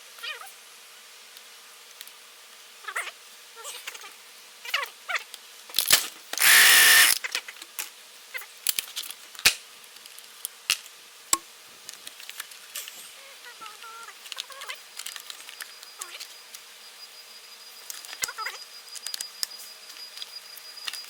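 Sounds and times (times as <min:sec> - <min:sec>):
leaf blower rushing burst: 0:06.4 - 0:07.2.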